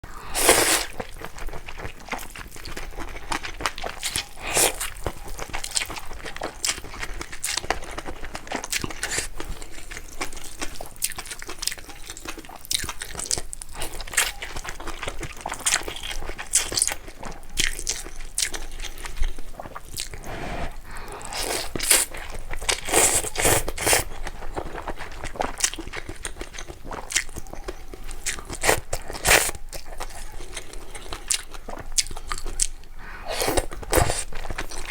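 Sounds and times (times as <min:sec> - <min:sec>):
person chewing and slurping noodles: 0:00.1 - 0:34.9.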